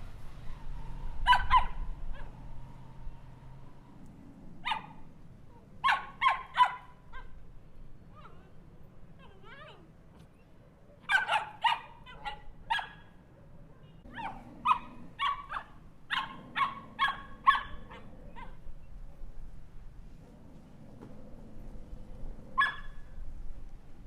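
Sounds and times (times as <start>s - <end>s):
small dog barking: 1.2s - 2.4s, 4.6s - 5.1s, 5.8s - 7.4s, 11.0s - 13.2s, 13.8s - 18.6s, 22.5s - 23.1s.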